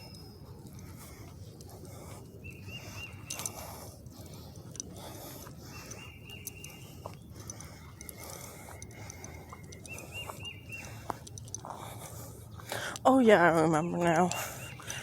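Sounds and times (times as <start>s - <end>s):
high bird chirps: 5.7s - 7.0s, 8.0s - 11.0s.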